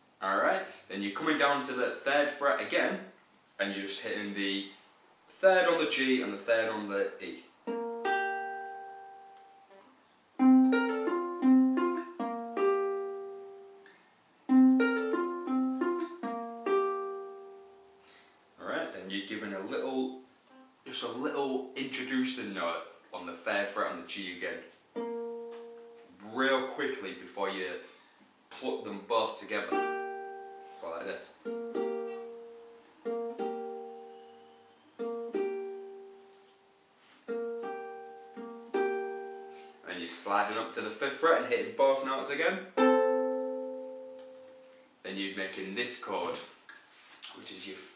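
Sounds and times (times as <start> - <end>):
fingerpicked ukulele: 7.6 - 18.0, 24.9 - 26.2, 29.7 - 30.8, 31.4 - 36.6, 37.2 - 39.7, 42.8 - 44.8.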